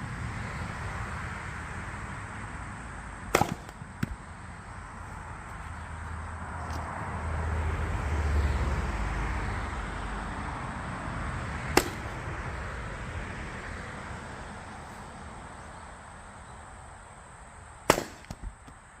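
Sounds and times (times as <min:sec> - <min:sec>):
axe splitting firewood: 0:03.3 - 0:04.2
small wood knocks: 0:18.2 - 0:18.8.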